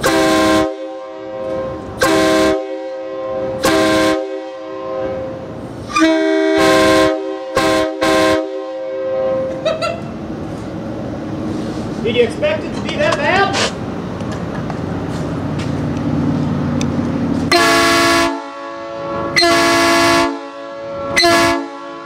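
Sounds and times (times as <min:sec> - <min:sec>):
locomotive air horn blasts: 0:00.0 - 0:09.5, 0:17.5 - 0:22.0.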